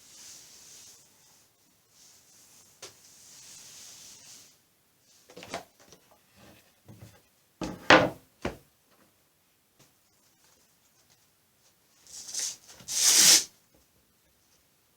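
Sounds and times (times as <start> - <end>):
wooden knocks on workbench: 6.9 - 8.6.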